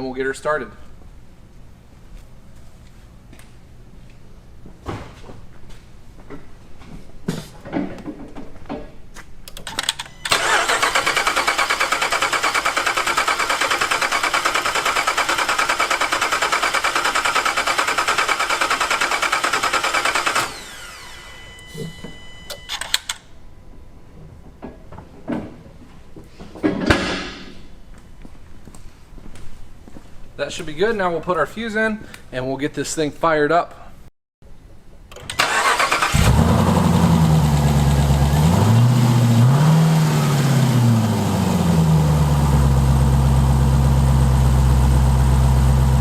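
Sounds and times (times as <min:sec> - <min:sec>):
engine cranking on starter: 0:09.6 - 0:21.3, 0:35.1 - 0:39.3.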